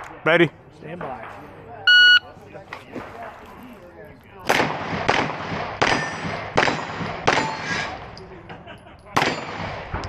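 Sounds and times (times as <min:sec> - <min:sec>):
pistol shots: 0:04.4 - 0:08.0, 0:09.2 - 0:10.0.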